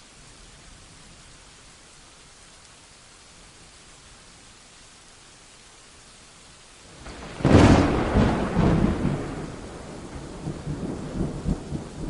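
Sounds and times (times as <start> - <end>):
rain hiss: 0.0 - 12.0
thunderclap rumbling: 7.0 - 12.0.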